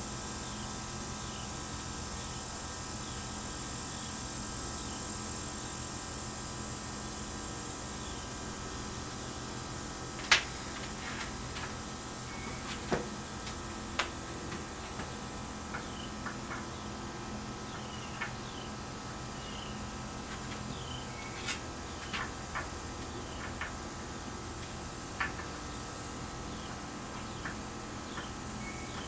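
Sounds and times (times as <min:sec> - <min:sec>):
steady electrical hum: 0:00.0 - 0:29.0
small tools clicking and tapping: 0:10.1 - 0:19.0, 0:20.2 - 0:25.8, 0:26.5 - 0:29.0.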